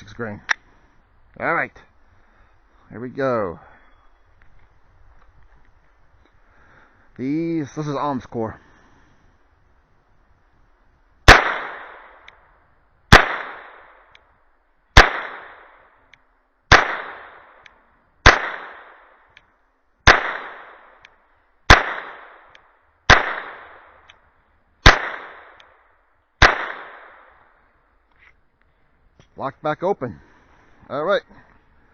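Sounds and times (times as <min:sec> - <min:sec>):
pistol shots with echo: 0:11.3 - 0:12.3, 0:13.1 - 0:14.0, 0:15.0 - 0:15.8, 0:16.7 - 0:17.6, 0:18.2 - 0:19.2, 0:20.0 - 0:21.0, 0:21.7 - 0:24.1, 0:24.8 - 0:25.8, 0:26.4 - 0:27.4.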